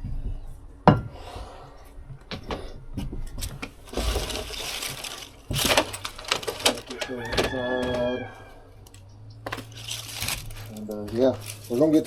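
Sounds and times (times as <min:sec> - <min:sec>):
debris knocking and clattering: 0:02.3 - 0:08.3, 0:09.4 - 0:12.0
scraping rustle: 0:03.6 - 0:08.6, 0:09.4 - 0:12.0.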